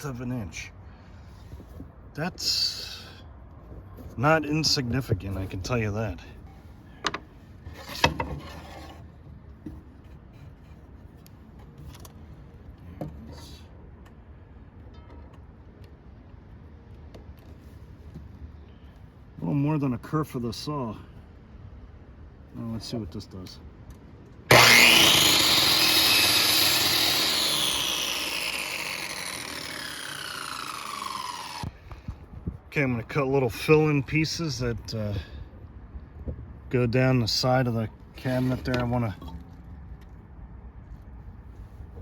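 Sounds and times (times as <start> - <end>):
power saw motor whine: 24.5 - 31.7.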